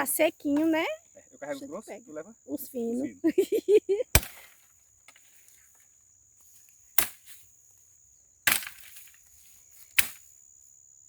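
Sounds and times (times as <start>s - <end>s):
dry branches snapping: 4.2s - 5.2s, 7.0s - 7.4s, 8.5s - 9.2s, 9.9s - 10.2s.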